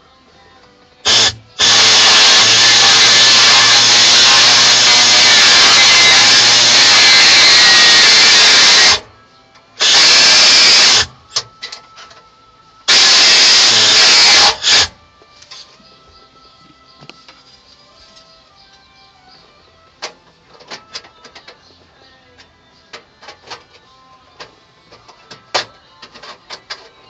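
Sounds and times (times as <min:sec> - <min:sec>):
handheld power tool running: 0:01.1 - 0:09.1, 0:09.8 - 0:11.1, 0:12.9 - 0:15.0.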